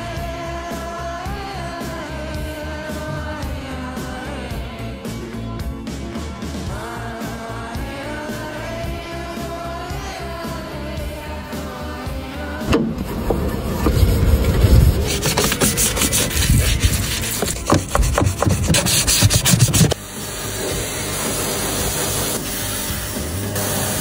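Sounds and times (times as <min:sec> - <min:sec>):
rough scraping strokes: 0:13.1 - 0:20.0
steady hiss: 0:19.7 - 0:24.0.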